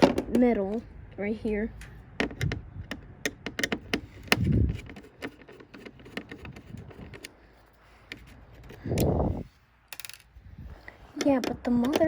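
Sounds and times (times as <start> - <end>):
clicks and clinks of parts handled: 9.9 - 12.0.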